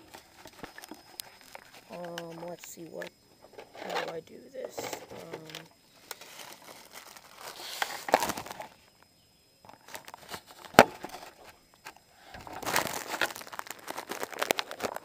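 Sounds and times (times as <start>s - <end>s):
camera handling rustling: 0.1s - 2.7s.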